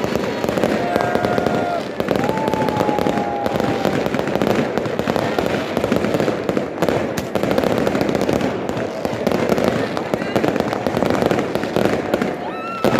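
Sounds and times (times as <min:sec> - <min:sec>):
firework whistle: 0:00.0 - 0:04.4
fireworks bangs and crackling: 0:00.0 - 0:12.9.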